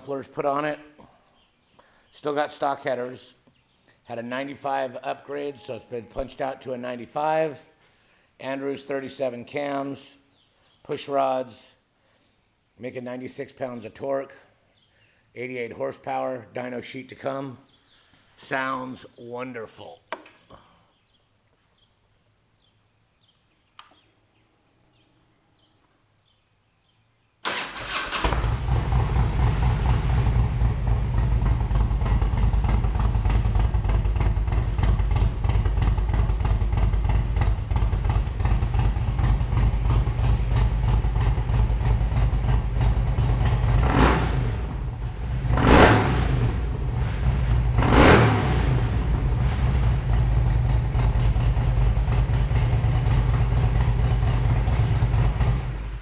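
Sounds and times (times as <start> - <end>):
faint click: 23.8 - 24.0
motorcycle throttle blips: 27.8 - 56.0
motorcycle engine idling: 28.4 - 56.0.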